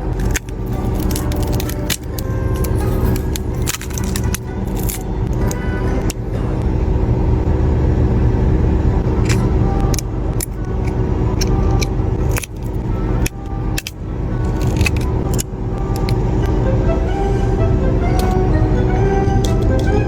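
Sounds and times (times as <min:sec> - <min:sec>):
car cabin rumble: 0:00.0 - 0:20.0
small metal parts clicking: 0:00.1 - 0:05.6, 0:09.2 - 0:16.2.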